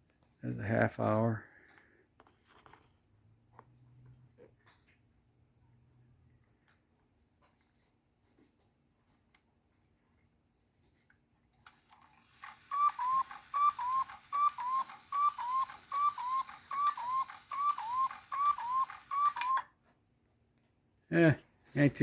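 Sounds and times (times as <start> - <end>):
clock strike train whirring: 11.7 - 19.6
clock ticking: 12.3 - 19.6
two-note cuckoo call: 12.7 - 19.6.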